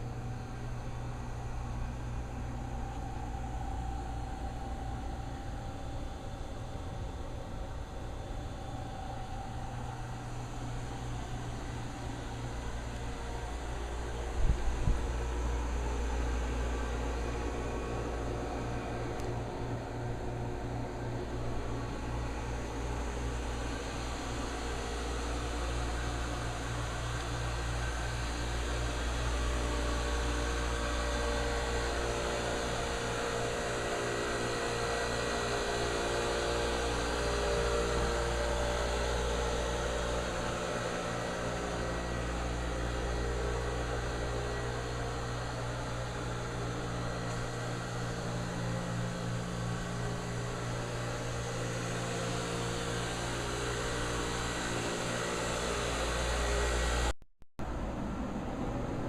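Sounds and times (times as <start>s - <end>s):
constant hiss: 0.0s - 57.1s
machinery drone: 0.0s - 57.1s.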